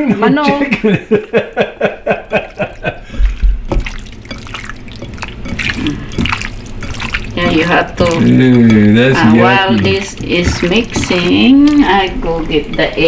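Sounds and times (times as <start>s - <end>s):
wet squelching of meat by hand: 2.5s - 12.7s.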